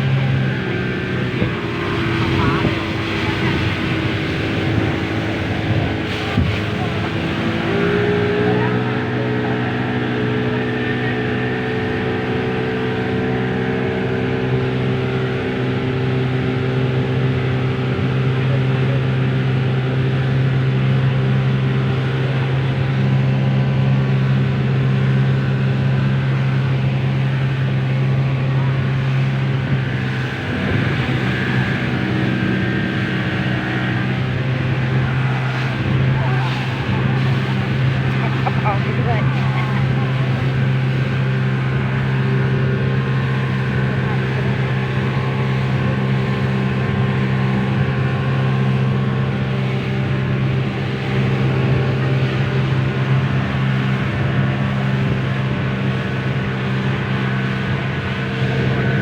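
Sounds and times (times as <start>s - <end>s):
boat engine running: 0.0s - 59.0s
rushing noise: 29.8s - 44.7s.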